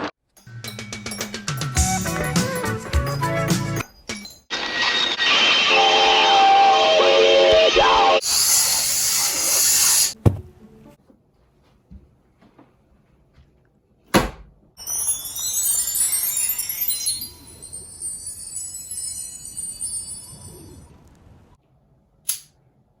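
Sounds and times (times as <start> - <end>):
high ringing chimes: 14.8 - 21.1.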